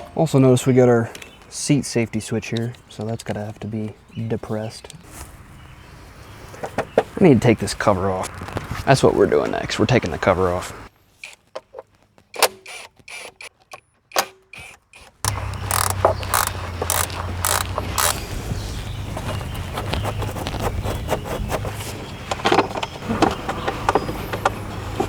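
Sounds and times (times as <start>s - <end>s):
metallic hand tool clicks: 15.3s - 18.2s.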